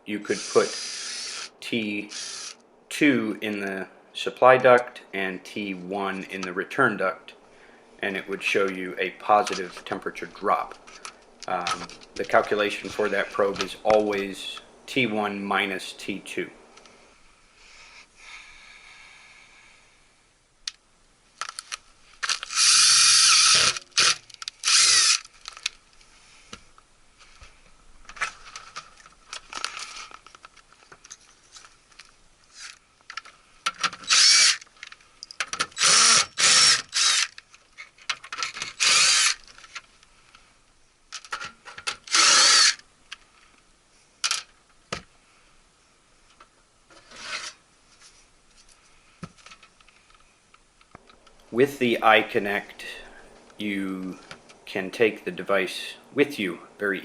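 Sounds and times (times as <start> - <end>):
power drill running: 0.3 - 1.5, 2.1 - 2.6, 22.3 - 25.3, 34.0 - 34.6, 35.8 - 37.3, 38.7 - 39.4, 42.1 - 42.8
handling noises: 8.3 - 14.8, 23.5 - 45.2.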